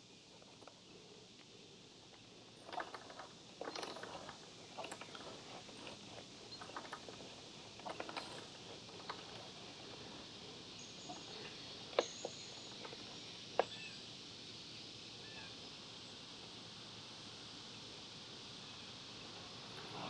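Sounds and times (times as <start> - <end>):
faint steady hiss: 0.0 - 20.0
drive chain clicking and rattling: 2.6 - 13.3.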